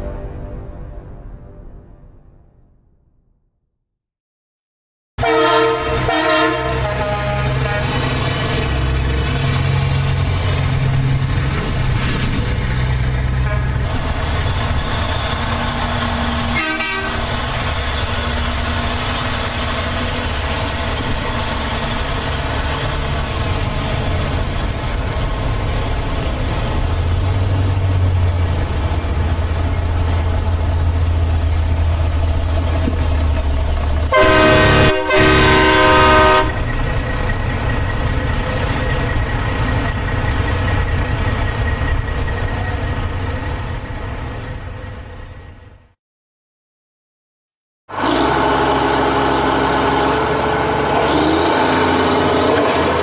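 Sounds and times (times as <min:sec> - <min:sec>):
air horn blast: 0:05.2 - 0:08.0, 0:13.4 - 0:13.9, 0:16.5 - 0:17.3, 0:34.1 - 0:36.6
diesel truck engine rumbling: 0:05.2 - 0:45.9, 0:47.9 - 0:53.0.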